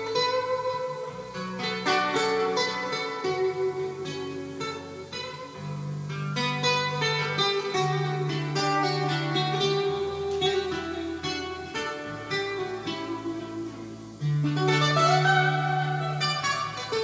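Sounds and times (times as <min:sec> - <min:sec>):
instrumental guitar music: 0:00.0 - 0:17.0.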